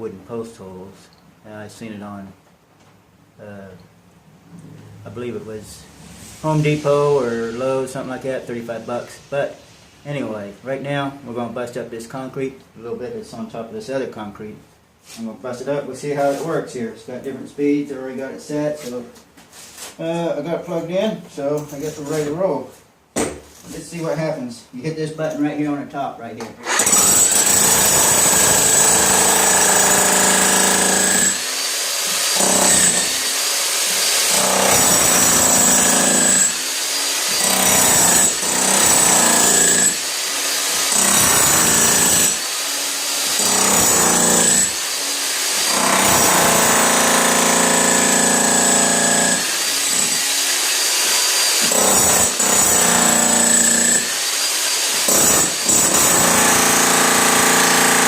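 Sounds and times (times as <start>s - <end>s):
jackhammer breaking concrete: 26.7s - 58.0s.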